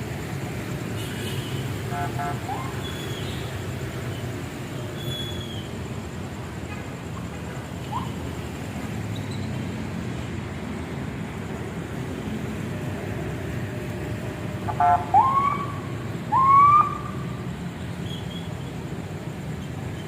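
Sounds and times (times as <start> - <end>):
low rumble of train: 0.0 - 20.0
locomotive air horn blasts: 1.1 - 2.6, 14.7 - 15.2.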